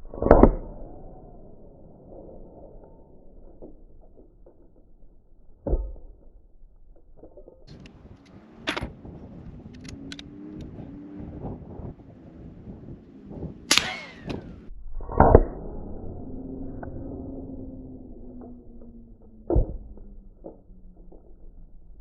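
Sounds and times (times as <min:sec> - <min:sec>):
gun handling clicks: 0:07.7 - 0:10.7, 0:13.7 - 0:14.4
sharp metallic click: 0:09.6 - 0:10.7, 0:13.7 - 0:15.5
bullet hitting steel target: 0:13.7 - 0:14.6
suppressed pistol shot: 0:13.7 - 0:15.4.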